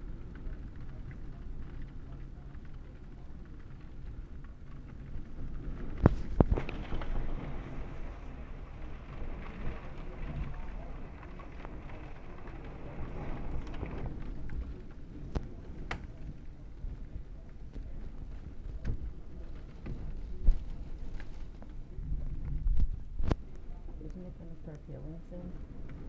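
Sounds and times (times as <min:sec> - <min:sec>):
thunder rumbling: 0:00.0 - 0:26.0
thunder crack: 0:05.0 - 0:21.0.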